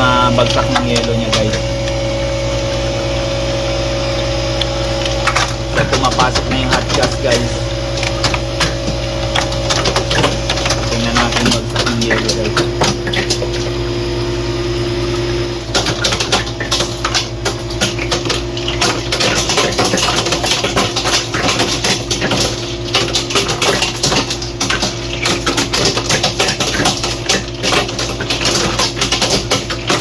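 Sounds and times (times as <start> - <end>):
ice machine humming: 0.0 - 30.0
ice cubes clattering down: 15.8 - 30.0.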